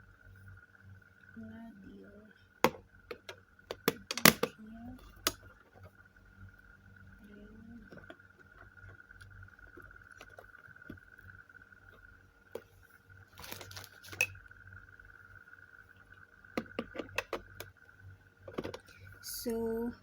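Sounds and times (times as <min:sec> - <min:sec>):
plastic parts clicking and rattling: 0:12.5 - 0:14.3, 0:18.4 - 0:19.1.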